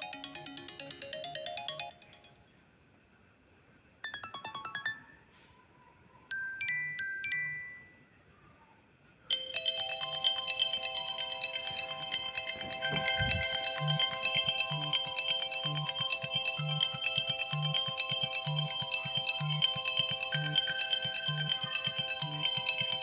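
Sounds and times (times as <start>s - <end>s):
phone ringtones and alert tones: 0.0s - 2.4s, 11.4s - 14.6s.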